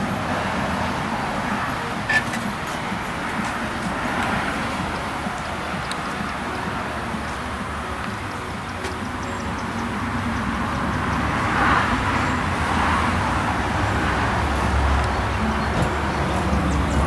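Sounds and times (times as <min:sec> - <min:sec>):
motor vehicle running: 0:00.0 - 0:17.0.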